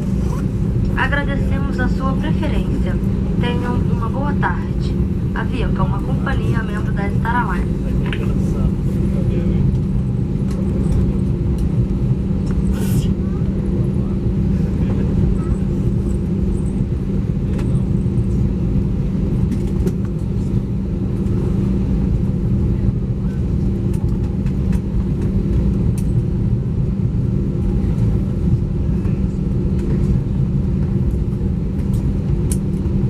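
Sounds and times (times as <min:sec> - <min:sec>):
airplane cabin rumble and hum: 0:00.0 - 0:33.0.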